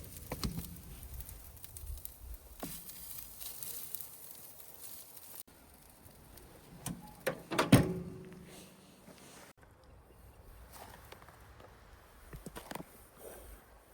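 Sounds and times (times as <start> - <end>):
light crackling hiss: 0.0 - 7.3.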